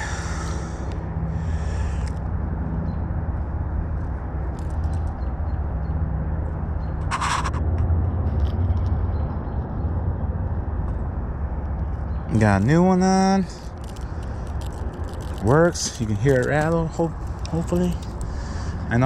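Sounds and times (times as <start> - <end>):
fishing tackle clicks: 4.5 - 5.2, 13.6 - 18.6.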